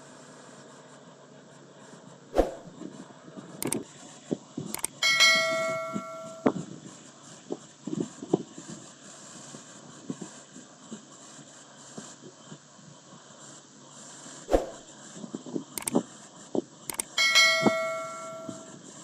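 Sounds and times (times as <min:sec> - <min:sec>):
metallic knocks and clanks: 0:04.8 - 0:06.5
struck metal ringing like a bell: 0:04.8 - 0:06.6, 0:16.9 - 0:18.8.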